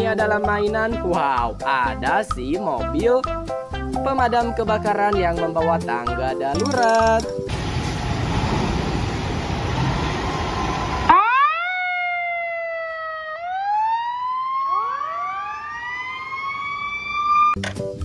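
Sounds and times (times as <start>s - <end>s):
fire engine siren wailing: 7.5s - 17.6s.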